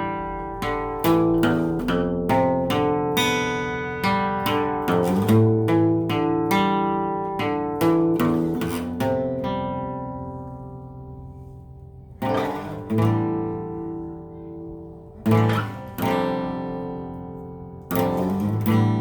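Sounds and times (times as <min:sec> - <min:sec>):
guitar chords strummed: 0:00.0 - 0:19.0.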